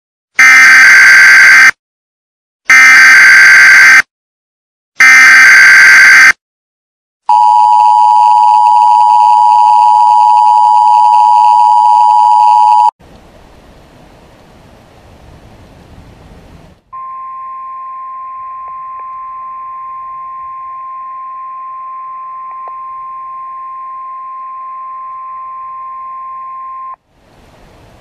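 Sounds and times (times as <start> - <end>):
steady attention tone: 16.9 - 27.0.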